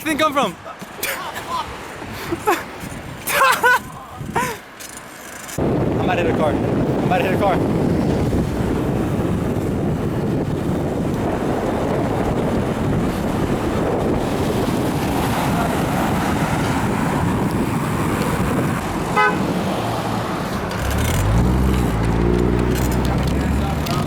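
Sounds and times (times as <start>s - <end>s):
traffic noise: 0.0s - 24.0s
wind on microphone: 1.7s - 4.6s, 5.6s - 24.0s
car horn toot: 19.1s - 19.4s.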